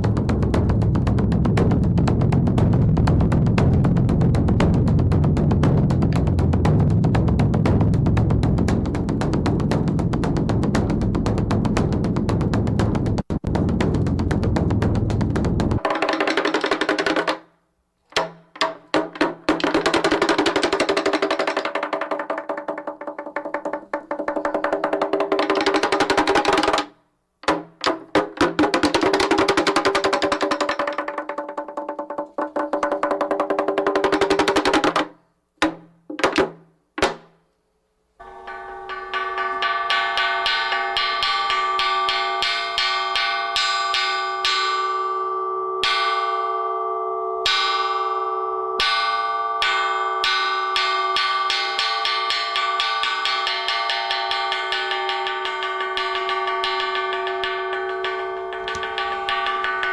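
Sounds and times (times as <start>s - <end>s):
bronze gong ringing: 38.2s - 59.9s.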